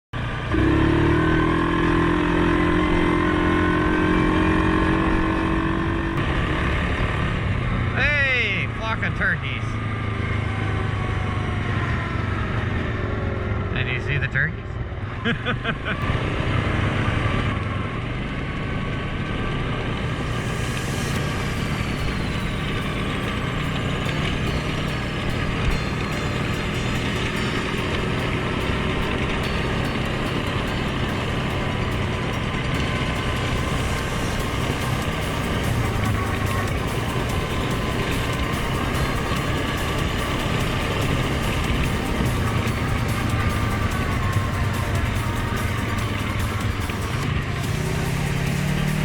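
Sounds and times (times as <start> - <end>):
atv engine running: 0.2 - 49.0
mid-pitched whine: 19.8 - 48.8.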